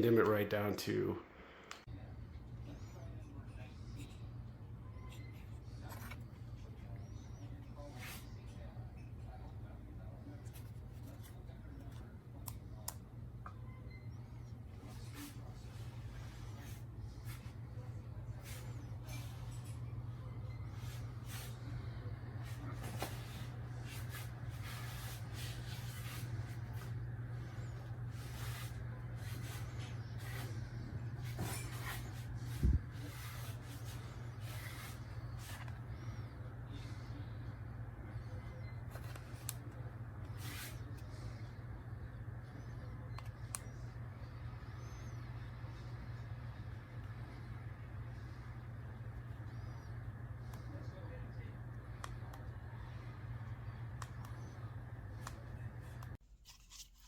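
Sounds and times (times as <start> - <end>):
ceiling fan humming: 0.0 - 56.2.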